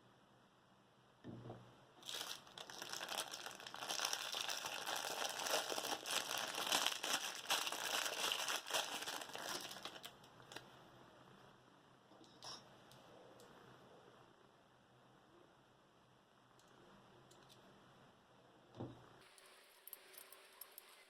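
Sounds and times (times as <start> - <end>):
crinkling and rustling: 2.0 - 10.7.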